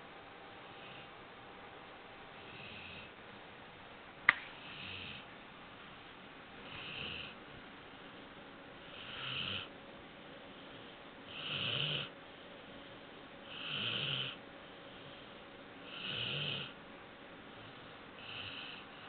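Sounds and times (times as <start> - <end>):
puppy snoring: 2.4 - 3.2, 4.6 - 5.3, 6.6 - 7.4, 8.8 - 9.7, 10.7 - 12.2, 13.4 - 14.4, 15.8 - 16.8, 17.6 - 19.0.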